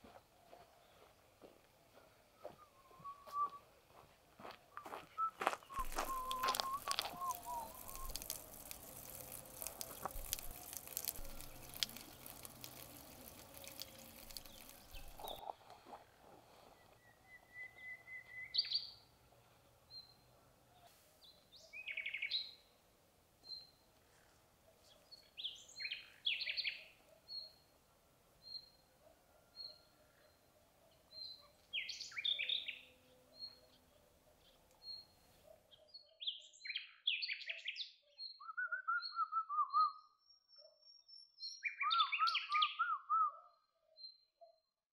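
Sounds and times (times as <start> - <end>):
crackly rustling noise: 4.8 - 16.8
birds warbling: 5.8 - 15.4.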